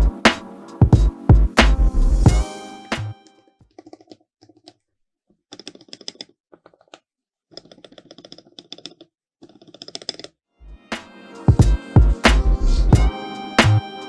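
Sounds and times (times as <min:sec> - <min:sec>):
music: 0:00.0 - 0:03.5, 0:10.6 - 0:14.0
mechanical keyboard keys clacking: 0:05.5 - 0:07.0, 0:07.6 - 0:10.3.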